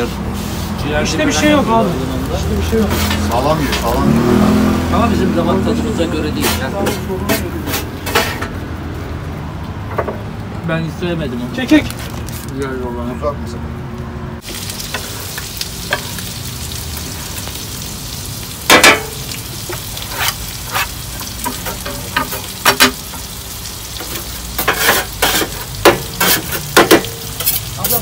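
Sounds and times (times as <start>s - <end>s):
food sizzling on a griddle: 0.0s - 8.4s, 14.4s - 28.0s.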